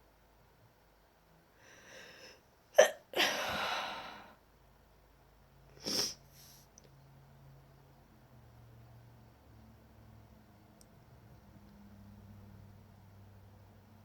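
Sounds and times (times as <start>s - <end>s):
person sneezing: 2.8s - 4.1s, 5.8s - 6.2s
breathy exhale: 3.2s - 4.4s.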